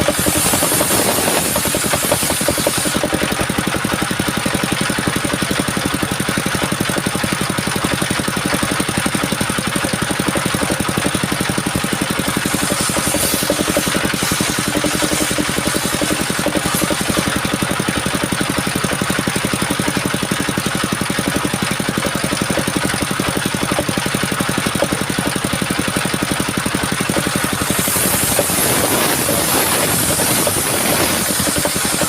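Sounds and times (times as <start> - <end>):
sawmill engine pulsing: 0.0 - 32.0
loud high hiss: 12.4 - 17.3, 27.4 - 32.0.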